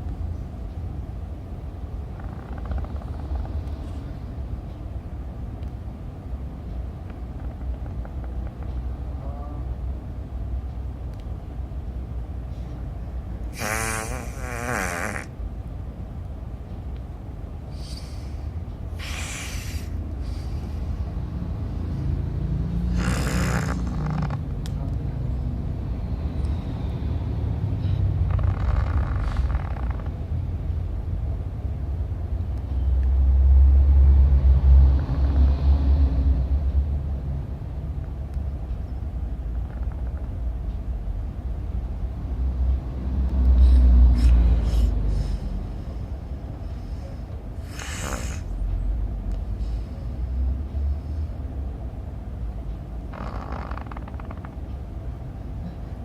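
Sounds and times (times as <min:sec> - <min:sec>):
dog snoring: 0:13.5 - 0:15.3, 0:22.8 - 0:24.4, 0:47.6 - 0:48.5
hissing breaths: 0:13.5 - 0:15.3, 0:17.7 - 0:21.2, 0:43.4 - 0:48.6.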